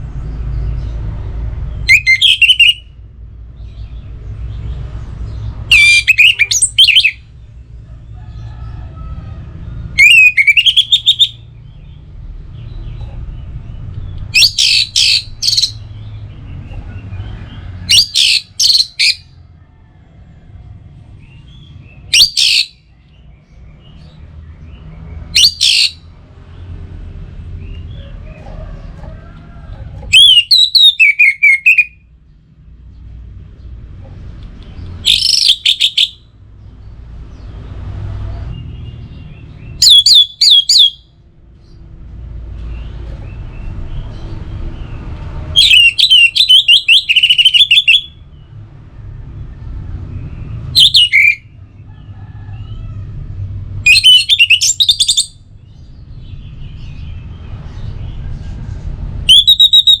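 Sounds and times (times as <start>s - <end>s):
thrush singing whistled notes: 1.8s - 3.0s, 5.7s - 7.3s, 10.0s - 11.5s, 14.3s - 15.8s, 17.9s - 19.2s, 22.0s - 22.8s, 25.3s - 26.0s, 30.1s - 32.0s, 35.0s - 36.2s, 39.8s - 41.1s, 45.6s - 48.2s, 50.8s - 51.5s, 53.9s - 55.4s, 59.3s - 60.0s.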